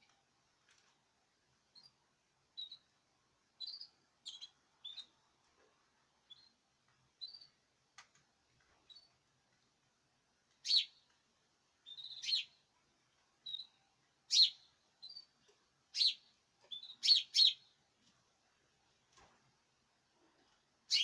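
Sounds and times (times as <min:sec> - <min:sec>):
bird chirping: 0:03.6 - 0:05.2, 0:10.6 - 0:11.0, 0:11.8 - 0:12.6, 0:13.4 - 0:15.3, 0:16.0 - 0:17.7.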